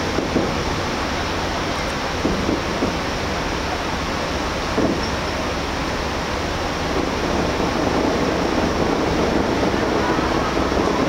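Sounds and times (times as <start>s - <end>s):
fireworks bursting and crackling: 2.1s - 3.8s, 6.8s - 11.0s.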